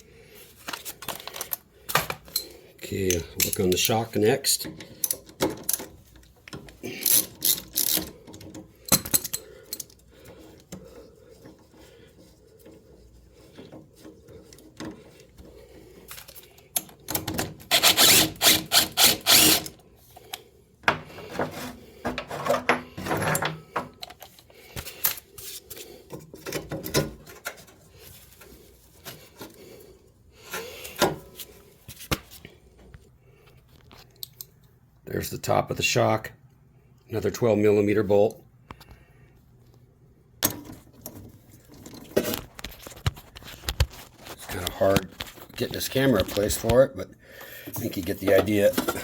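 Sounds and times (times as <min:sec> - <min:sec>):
socket wrench ratcheting: 0:07.0 - 0:10.0, 0:16.9 - 0:19.8.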